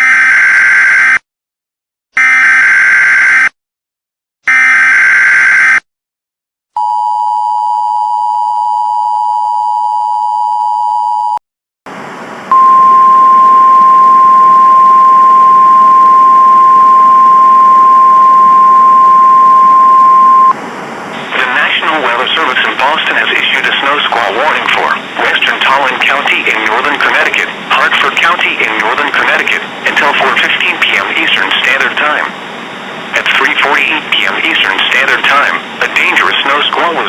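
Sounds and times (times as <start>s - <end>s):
two-tone attention signal: 12.5s - 20.6s
static hiss: 21.1s - 32.3s.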